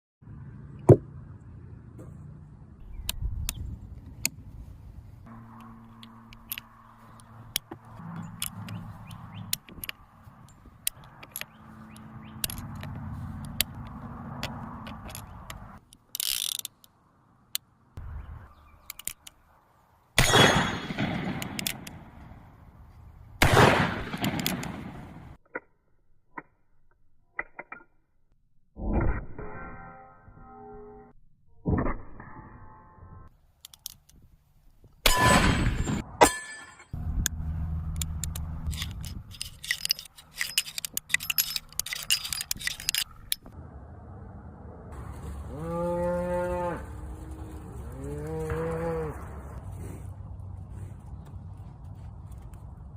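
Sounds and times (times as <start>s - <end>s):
pistol mechanism clicking: 13.5s - 16.9s, 21.3s - 22.0s, 25.4s - 28.1s, 37.2s - 43.5s.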